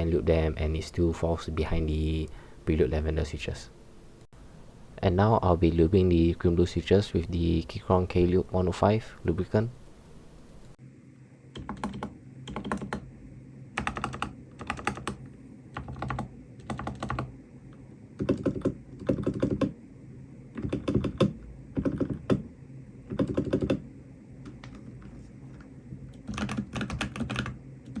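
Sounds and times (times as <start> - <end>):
mechanical keyboard keys clacking: 11.6 - 13.0, 13.8 - 15.2, 15.8 - 17.3, 18.2 - 19.7, 20.6 - 22.4, 23.1 - 23.8, 26.1 - 28.0.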